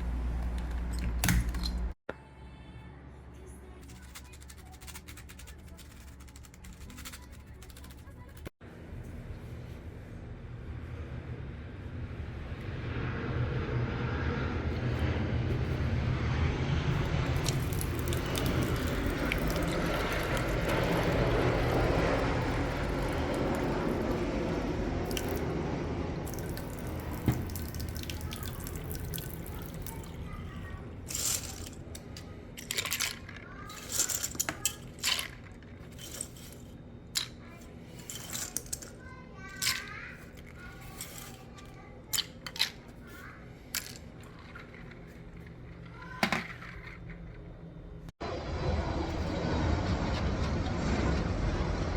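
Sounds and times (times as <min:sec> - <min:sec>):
sharp clicks and clatters: 0:03.8 - 0:08.6.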